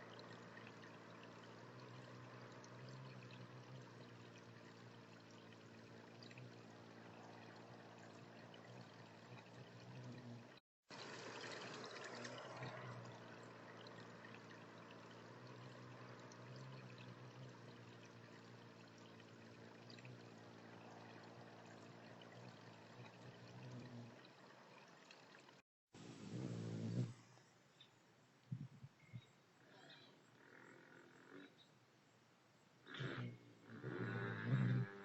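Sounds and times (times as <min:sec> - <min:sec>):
water trickling: 0:00.0 - 0:25.6.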